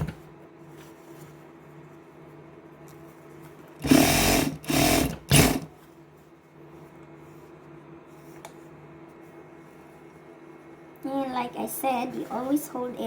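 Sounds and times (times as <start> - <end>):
electric sewing machine stitching: 3.8 - 5.7.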